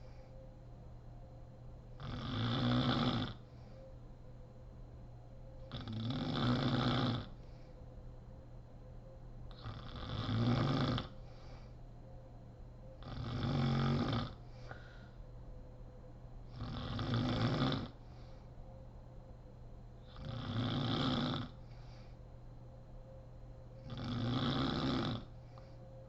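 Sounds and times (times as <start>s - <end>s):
faint breathing: 0.0s - 0.6s, 3.2s - 4.1s, 7.2s - 8.0s, 11.0s - 12.1s, 13.0s - 15.4s, 16.5s - 18.8s, 21.4s - 22.5s, 23.8s - 26.0s
woman snoring: 2.0s - 3.5s, 5.7s - 7.4s, 9.5s - 11.2s, 13.0s - 15.0s, 16.6s - 18.0s, 20.1s - 21.6s, 23.8s - 25.4s.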